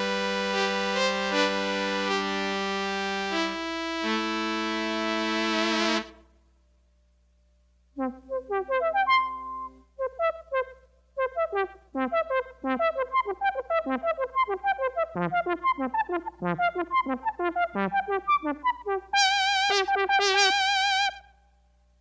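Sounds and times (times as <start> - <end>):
synthesizer melodic run: 8.0 - 21.1.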